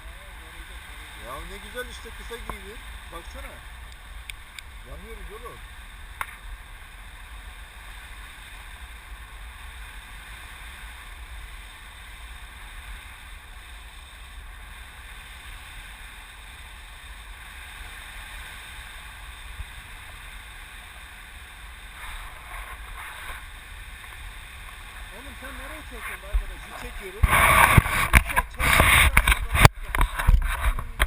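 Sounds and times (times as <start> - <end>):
wind rushing over microphone: 17.6 - 31.0.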